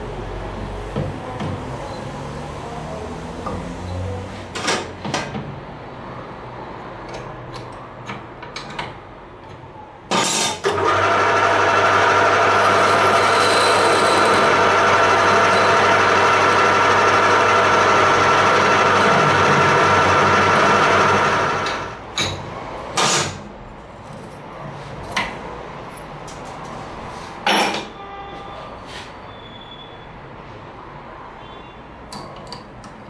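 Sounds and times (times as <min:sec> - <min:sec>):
belt grinder motor hum: 0:10.7 - 0:21.9.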